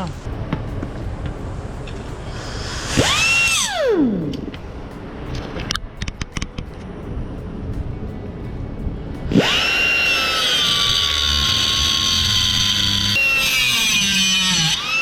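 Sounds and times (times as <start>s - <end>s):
angle grinder whining: 2.3s - 4.4s, 9.3s - 15.0s.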